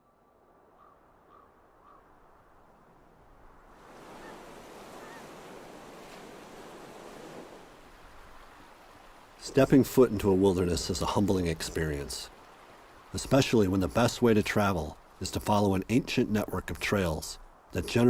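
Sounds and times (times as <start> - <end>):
wind: 0.0 - 18.0
surf rushing: 3.6 - 15.6.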